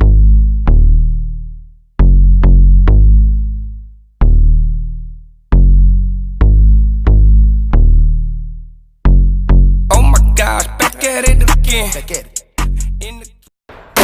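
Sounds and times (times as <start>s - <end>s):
hip hop drum machine beat: 9.1s - 14.0s.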